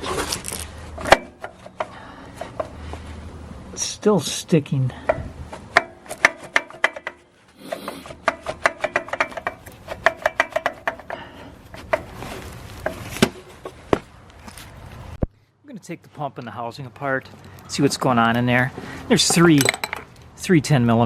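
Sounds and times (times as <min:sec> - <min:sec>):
metal-on-metal hammering: 0:05.1 - 0:07.2, 0:08.2 - 0:11.2.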